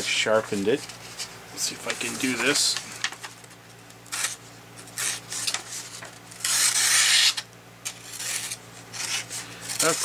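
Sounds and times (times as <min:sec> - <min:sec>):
knife blade rasping: 0:06.4 - 0:10.0.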